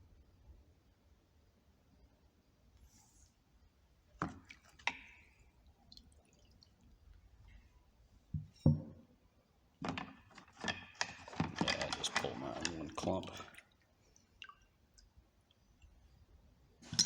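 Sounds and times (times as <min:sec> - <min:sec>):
liquid dripping: 0:04.2 - 0:07.6, 0:11.6 - 0:16.0
metal tools knocking together: 0:09.8 - 0:13.0.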